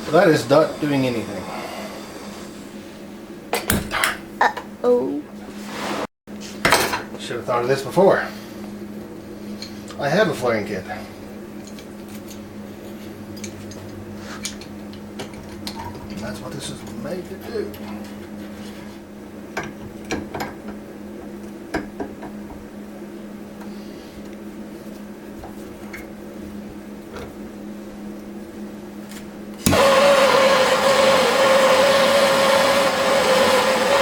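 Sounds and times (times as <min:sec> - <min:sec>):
loud mechanical whirring: 0:00.0 - 0:03.2, 0:29.6 - 0:34.0
steady low hum: 0:00.0 - 0:05.7, 0:06.3 - 0:29.7.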